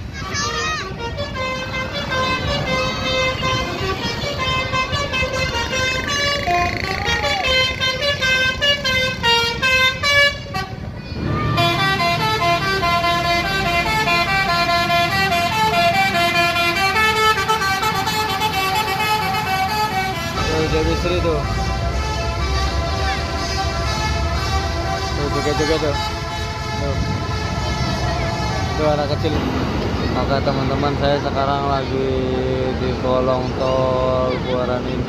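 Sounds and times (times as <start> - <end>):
engine rumble: 0.0 - 35.0
traffic rumble: 0.0 - 35.0
bus horn playing a melody: 0.3 - 29.1.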